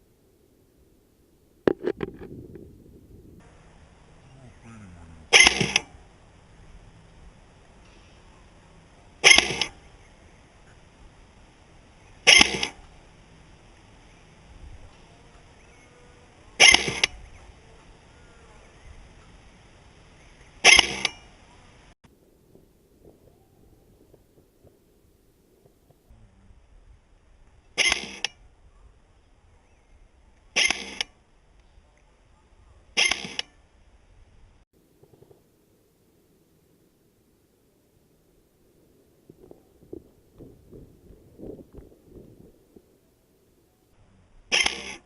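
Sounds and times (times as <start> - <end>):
airsoft rifle shots: 5.3 - 6.0, 9.2 - 9.9, 12.2 - 12.9, 16.6 - 17.2, 20.6 - 21.3, 30.6 - 31.1, 33.0 - 33.5, 44.5 - 45.0.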